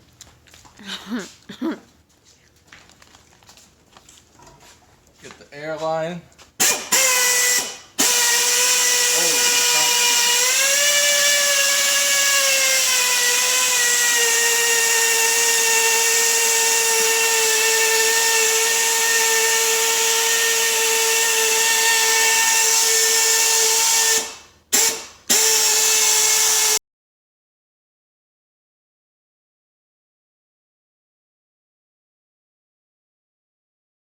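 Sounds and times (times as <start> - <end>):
air drill whining: 6.6 - 26.8.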